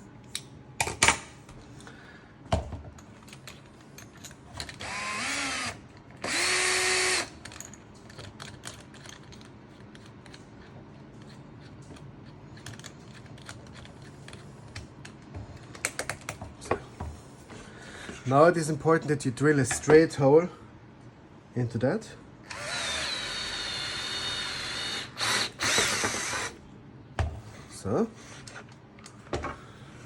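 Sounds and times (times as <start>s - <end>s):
power drill whining: 4.8s - 7.3s, 22.5s - 26.6s
handling clicks and knocks: 7.4s - 10.5s, 11.2s - 16.9s.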